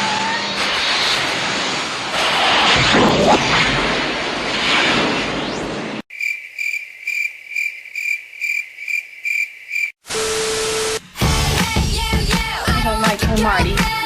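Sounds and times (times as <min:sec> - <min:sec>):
loud rushing noise: 0:00.0 - 0:06.0
crickets chirping: 0:06.1 - 0:10.0.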